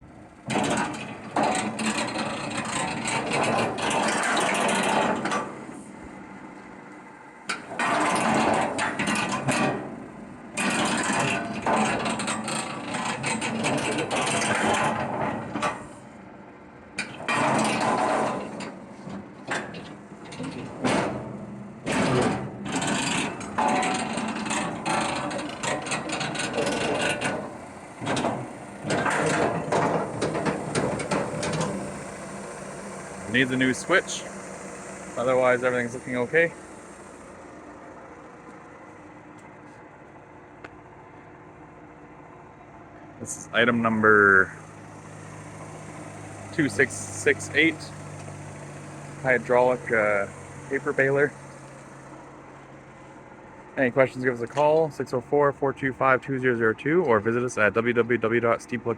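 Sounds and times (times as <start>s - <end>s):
hydraulic baler hissing: 17.0s - 40.0s, 43.2s - 55.0s.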